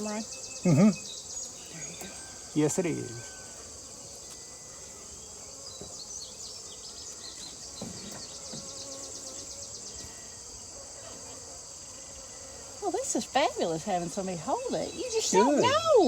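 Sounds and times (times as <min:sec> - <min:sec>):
insect chorus shrilling: 0:00.0 - 0:16.0.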